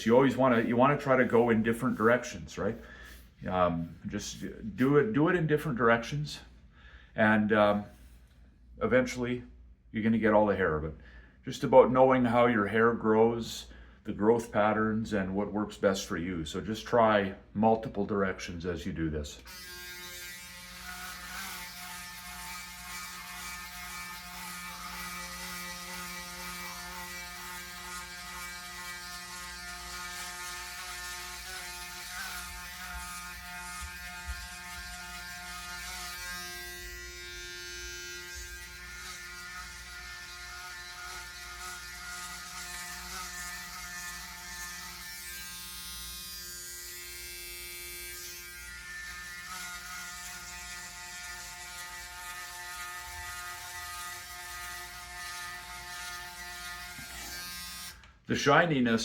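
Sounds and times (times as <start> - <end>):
electric shaver buzzing: 19.4 - 58.1.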